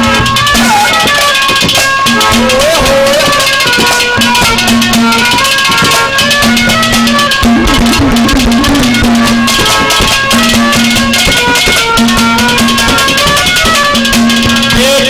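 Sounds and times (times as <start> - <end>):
drum and rattling percussion: 0.0 - 15.0
low drone note: 0.0 - 15.0
stepping melody line: 0.0 - 15.0.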